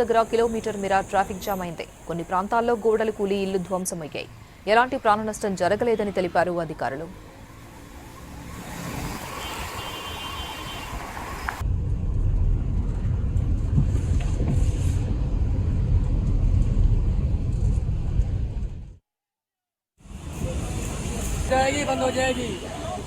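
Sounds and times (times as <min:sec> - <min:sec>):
even hiss: 0:00.0 - 0:03.9
low rumble of road vehicles: 0:00.0 - 0:08.7, 0:09.3 - 0:19.0, 0:20.0 - 0:23.0.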